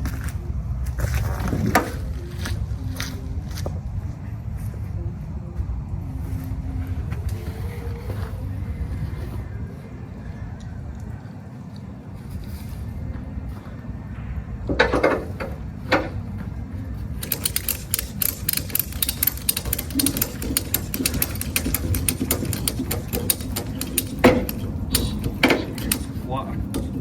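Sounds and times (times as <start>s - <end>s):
ratchet strap clicking: 17.2s - 26.2s
ratchet strap clanks: 17.2s - 27.0s.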